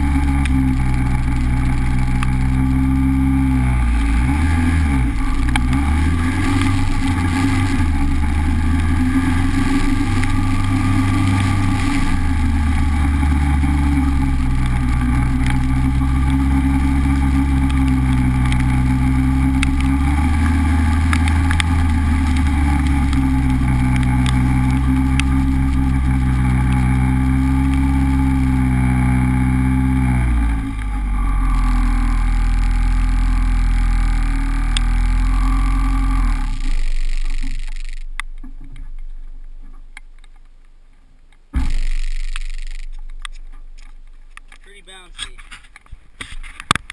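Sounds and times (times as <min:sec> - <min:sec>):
car engine running: 0:00.0 - 0:40.7, 0:41.4 - 0:45.8
road and rain rumble: 0:00.0 - 0:46.9.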